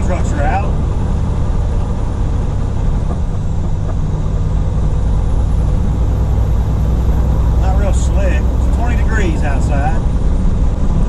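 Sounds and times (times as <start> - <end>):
road noise: 0.0 - 11.0
truck diesel engine drone: 0.0 - 11.0.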